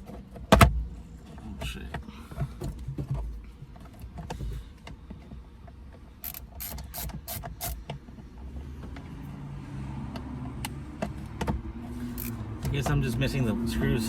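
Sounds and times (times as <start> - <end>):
sharp metallic clicks: 6.2 - 8.0.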